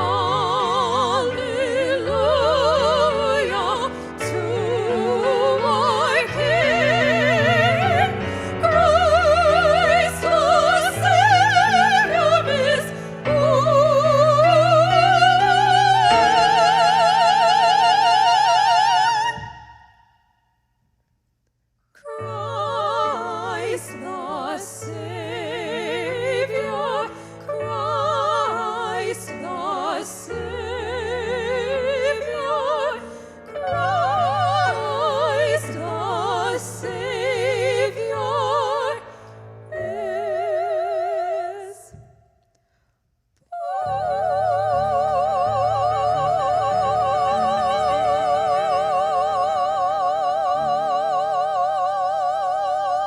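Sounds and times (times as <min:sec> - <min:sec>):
classical solo singing: 0:00.0 - 0:19.9, 0:22.0 - 0:42.1.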